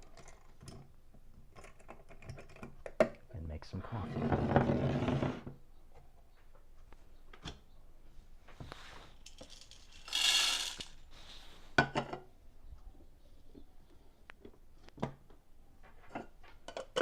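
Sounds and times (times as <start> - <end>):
coffee beans rattling: 9.2 - 11.0.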